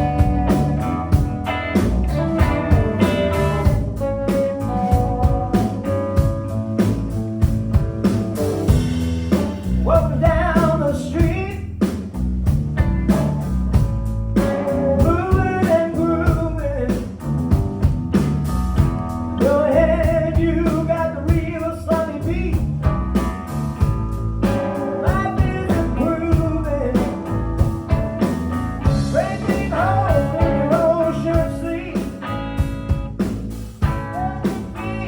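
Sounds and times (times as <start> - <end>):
electric guitar: 0.0 - 11.2, 12.8 - 35.0
bass guitar: 0.0 - 35.0
drum kit beat: 0.0 - 35.0
man singing: 9.7 - 11.8, 14.6 - 17.2, 19.4 - 22.7, 24.8 - 27.4, 28.8 - 32.3, 33.8 - 35.0.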